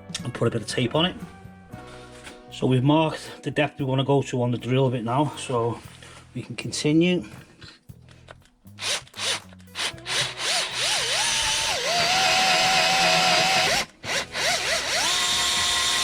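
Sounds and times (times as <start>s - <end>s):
power drill drilling metal: 8.8s - 16.0s.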